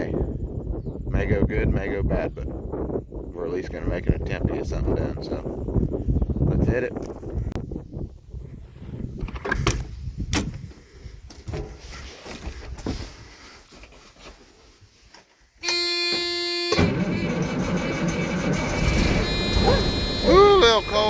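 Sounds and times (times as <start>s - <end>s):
electronic warning buzzer: 15.6s - 21.0s
knocks and clunks: 15.7s - 21.0s
loud steady sound: 16.8s - 21.0s.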